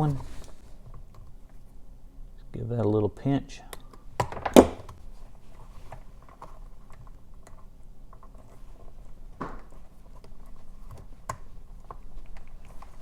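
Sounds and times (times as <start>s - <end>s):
firm knock: 4.3s - 4.9s.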